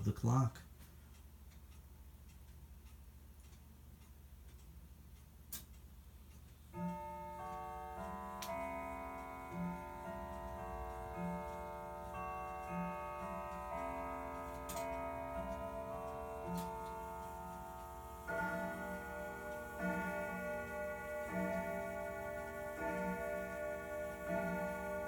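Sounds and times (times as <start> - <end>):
clock ticking: 0.0 - 25.0
grandfather clock chiming: 6.6 - 25.0.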